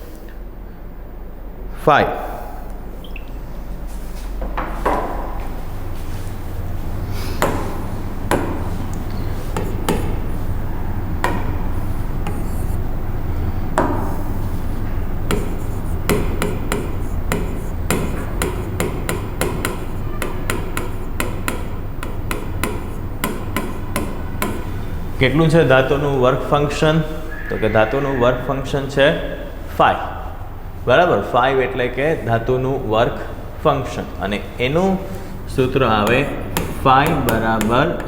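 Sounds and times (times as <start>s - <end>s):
steady low hum: 0.0s - 38.0s
writing taps and scratches on board: 7.4s - 10.4s, 12.2s - 12.8s, 15.2s - 24.8s, 35.6s - 38.0s.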